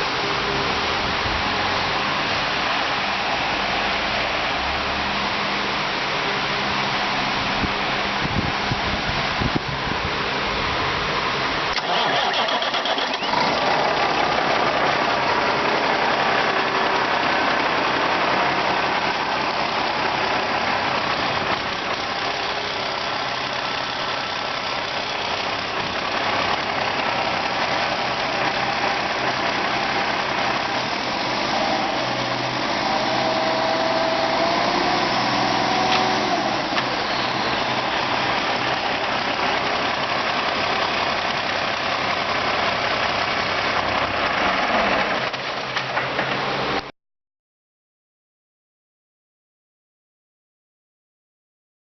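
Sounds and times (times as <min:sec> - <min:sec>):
diesel engine idling: 0:10.4 - 0:45.7.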